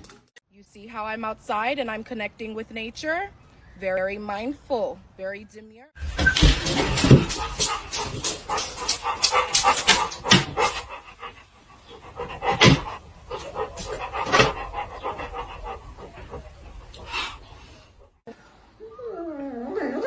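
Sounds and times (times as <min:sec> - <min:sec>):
dog panting: 0:06.7 - 0:18.2.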